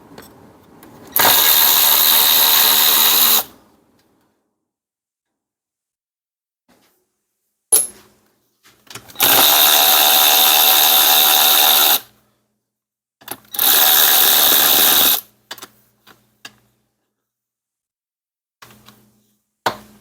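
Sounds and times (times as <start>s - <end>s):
power drill motor whine: 1.2s - 3.5s, 9.2s - 12.1s, 13.6s - 15.2s.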